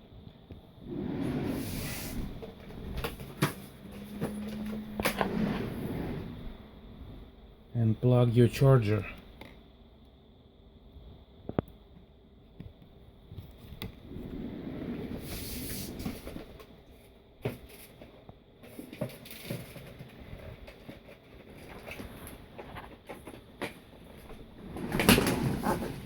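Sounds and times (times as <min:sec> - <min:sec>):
rustling scrape: 0:00.8 - 0:06.6, 0:14.0 - 0:16.6, 0:24.2 - 0:26.0.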